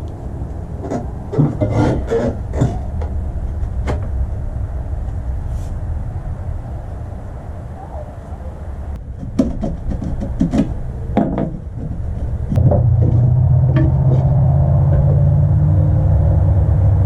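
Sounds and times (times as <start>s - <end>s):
loud steady low rumble: 0.0s - 9.9s, 10.6s - 17.0s
knocks and scrapes: 0.8s - 4.2s, 9.1s - 15.5s.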